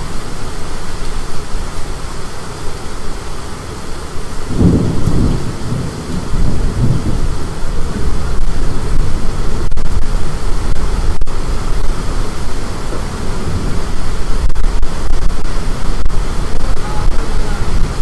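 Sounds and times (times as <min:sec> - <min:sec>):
storm wind buffeting microphone: 0:04.1 - 0:18.0.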